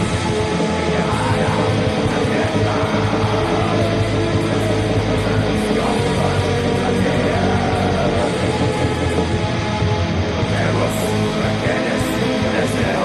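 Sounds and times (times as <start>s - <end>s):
heavy metal music: 0.0s - 13.0s.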